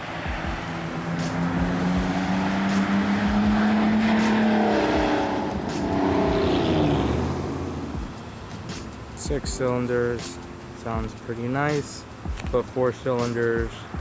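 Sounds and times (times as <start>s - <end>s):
car exhaust driving past: 0.0s - 8.2s.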